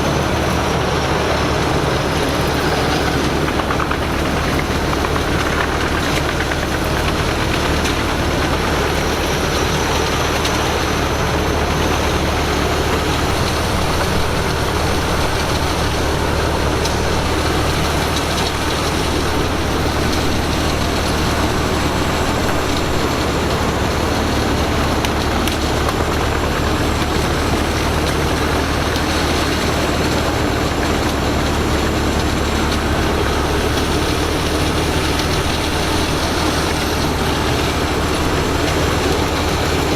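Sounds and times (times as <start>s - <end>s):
wood chipper running: 0.0s - 39.9s.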